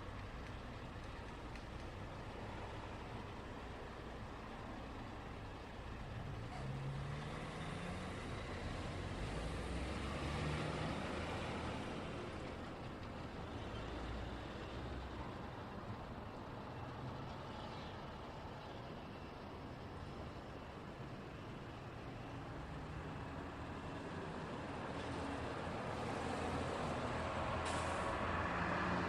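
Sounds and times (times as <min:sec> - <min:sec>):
road traffic passing: 0:00.0 - 0:29.0
vehicle passing by: 0:06.6 - 0:12.5, 0:22.6 - 0:29.0.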